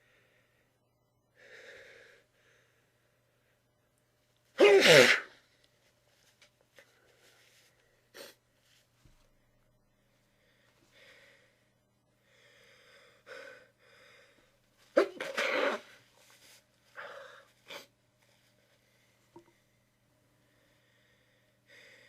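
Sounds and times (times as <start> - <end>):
person sneezing: 4.6 - 5.4, 14.9 - 16.0.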